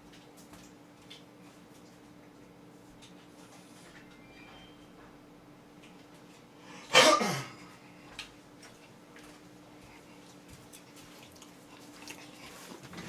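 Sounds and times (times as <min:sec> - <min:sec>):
faint steady hum: 0:00.0 - 0:13.0
person coughing: 0:06.8 - 0:07.7.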